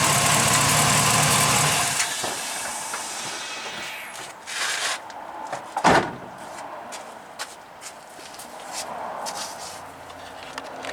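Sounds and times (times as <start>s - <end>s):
truck engine running: 0.0s - 4.1s
sharp thump: 5.8s - 6.4s.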